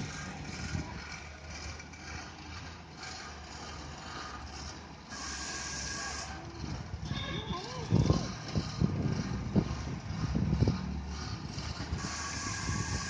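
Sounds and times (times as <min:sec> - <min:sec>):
mechanical and vehicle noise: 0:00.0 - 0:13.0.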